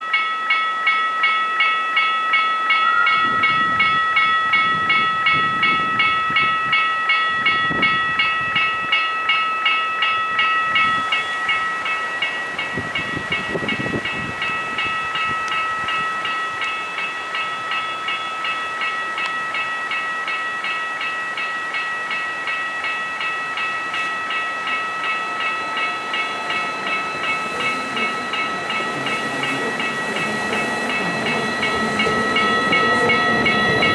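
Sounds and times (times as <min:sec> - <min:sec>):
level crossing warning bell: 0:00.0 - 0:33.9
steady ringing tone: 0:00.0 - 0:33.9
low train rumble: 0:02.3 - 0:33.9.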